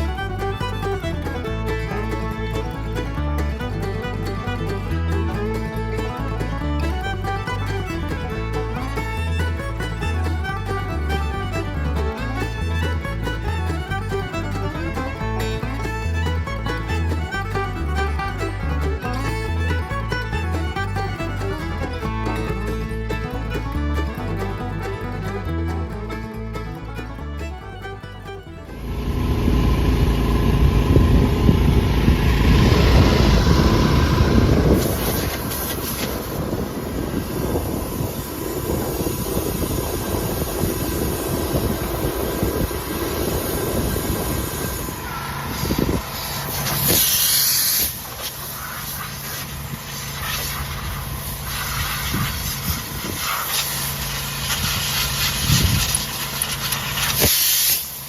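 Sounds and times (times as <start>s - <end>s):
machinery hissing: 28.8s - 58.0s
rushes of hissing air: 43.2s - 58.0s.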